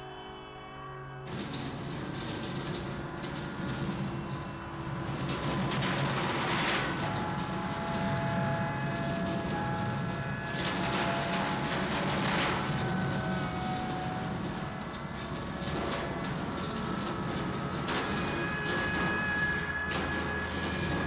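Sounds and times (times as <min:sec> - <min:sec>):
steady held tones: 0:17.4 - 0:21.0.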